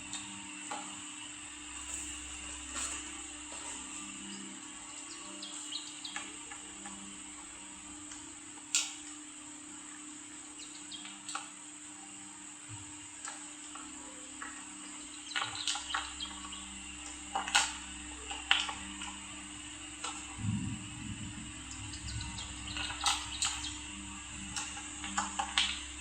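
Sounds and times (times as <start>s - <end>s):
low hum: 16.0s - 26.0s
steady hiss: 19.3s - 25.0s.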